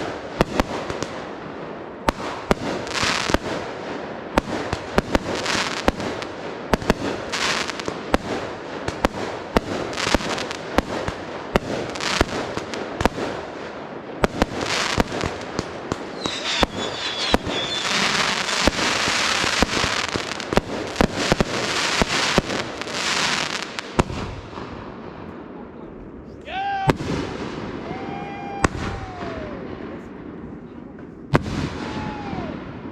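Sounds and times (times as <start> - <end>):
fireworks bangs: 0.0 - 26.1, 26.7 - 32.9
fireworks crackling and hissing: 0.0 - 26.2, 26.9 - 32.9
firework whistle: 16.1 - 18.8.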